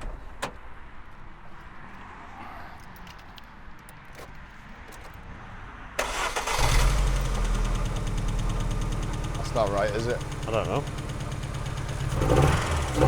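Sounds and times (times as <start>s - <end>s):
car engine cranking and starting: 6.0s - 13.0s
car engine running and misfiring: 6.0s - 13.0s.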